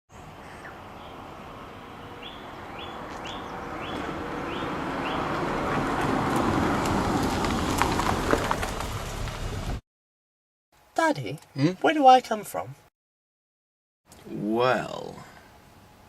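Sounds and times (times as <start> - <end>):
vehicle noise: 0.1 - 9.8.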